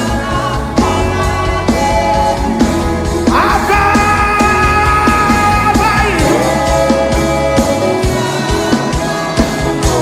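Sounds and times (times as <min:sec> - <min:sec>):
worship music: 0:00.0 - 0:10.0.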